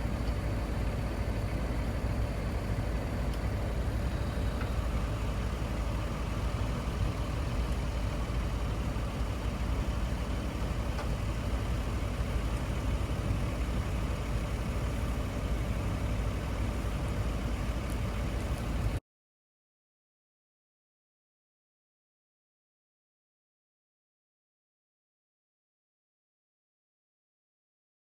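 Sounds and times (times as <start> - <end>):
tractor engine rumbling: 0.0 - 19.0.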